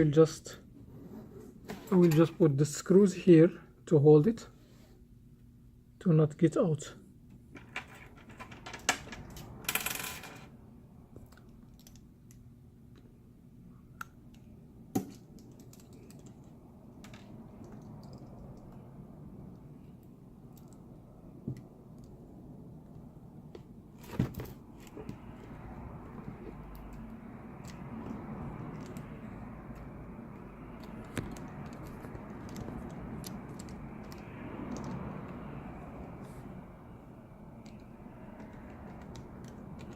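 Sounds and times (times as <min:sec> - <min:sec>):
faint steady hum: 0:00.0 - 0:39.9
screwdriver clicking and tapping: 0:30.8 - 0:35.0.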